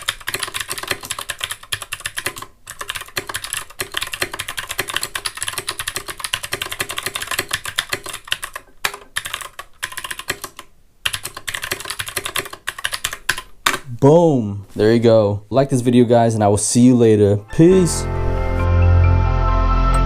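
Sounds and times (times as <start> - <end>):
mechanical keyboard typing: 0.0 - 13.8.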